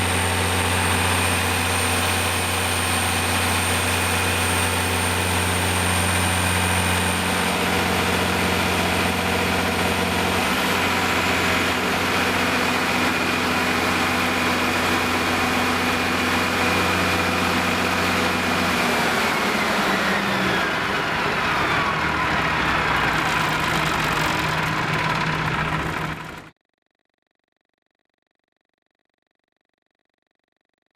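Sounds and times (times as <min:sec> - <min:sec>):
diesel generator running: 0:00.0 - 0:26.5
whine gliding down in pitch: 0:18.6 - 0:26.4.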